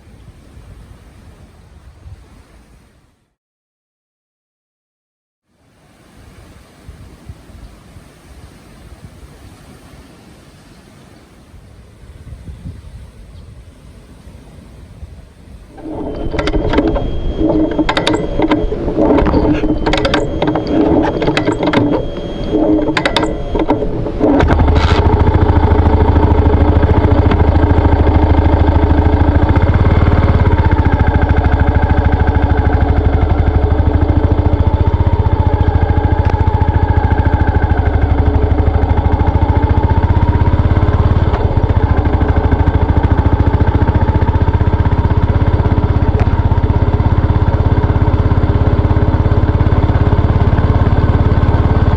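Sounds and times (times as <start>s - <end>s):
irregular clicks and knocks: 15.8s - 27.4s
motorcycle engine running: 15.8s - 51.9s.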